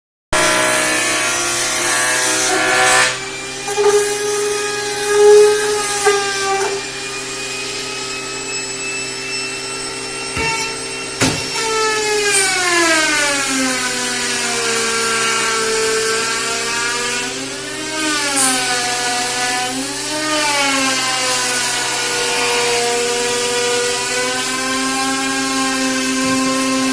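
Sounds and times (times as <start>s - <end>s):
power tool motor whine on wood: 13.9s - 26.9s.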